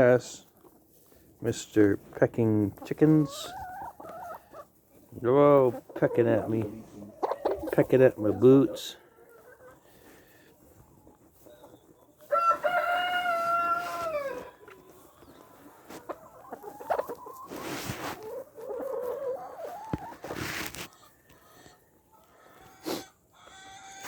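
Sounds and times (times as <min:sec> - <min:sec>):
chickens clucking and squawking: 0:00.0 - 0:24.0
chickens scuffling: 0:00.0 - 0:24.0
rooster crowing: 0:12.3 - 0:14.5.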